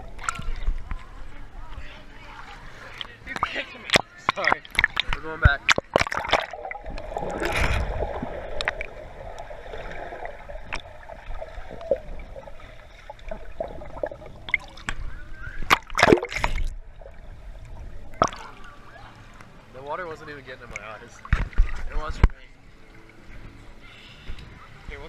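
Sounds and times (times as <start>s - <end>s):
water splashes: 0.0s - 23.5s
pool water sloshing and gurgling: 0.0s - 25.0s.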